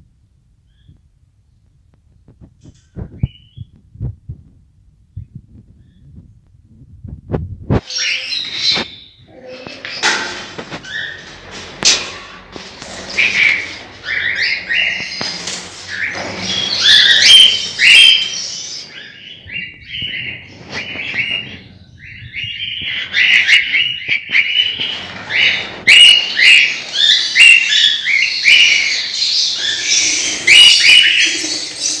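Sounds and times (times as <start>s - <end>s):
parrots chirping: 7.8s - 32.0s.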